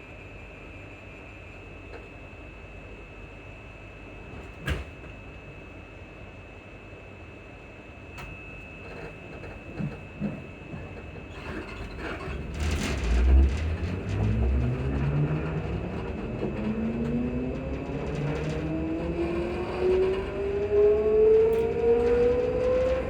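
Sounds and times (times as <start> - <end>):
train low rumble: 0.0 - 23.0
traction motor whine rising: 11.8 - 23.0.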